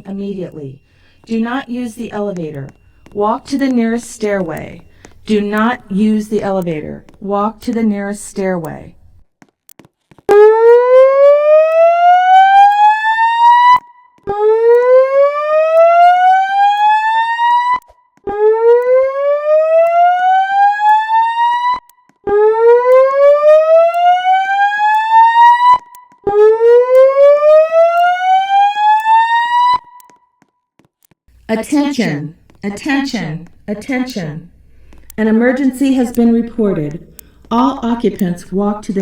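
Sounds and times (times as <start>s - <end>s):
rising whoop alarm tone: 10.3s - 30.0s.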